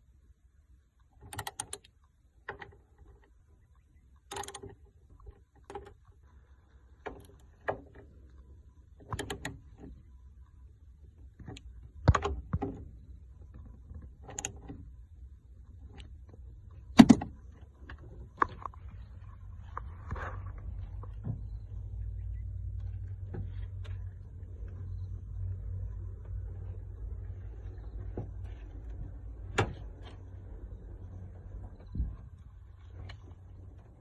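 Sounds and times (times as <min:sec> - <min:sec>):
metallic door mechanism clicks: 0:01.2 - 0:01.9, 0:04.3 - 0:04.8, 0:09.0 - 0:09.9, 0:14.2 - 0:14.8.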